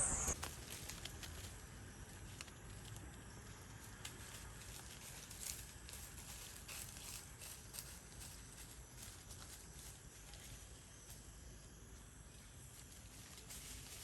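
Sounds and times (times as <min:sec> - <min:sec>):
low steady rumble: 0:00.0 - 0:00.7.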